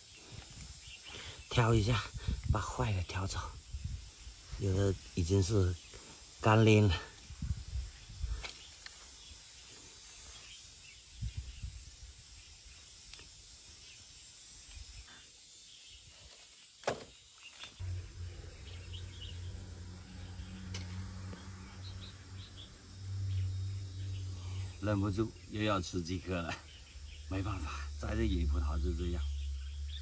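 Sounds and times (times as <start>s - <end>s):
low steady hum: 17.8s - 30.0s.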